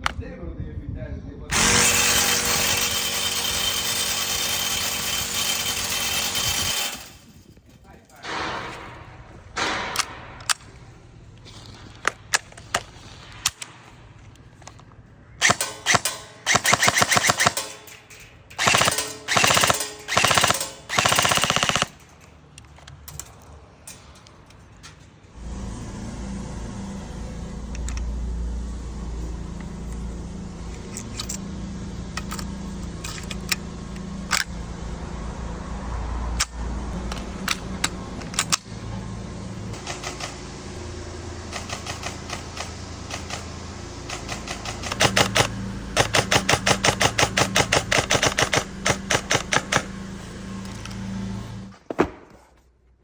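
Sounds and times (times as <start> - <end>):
airsoft gun shots: 15.4 - 17.8.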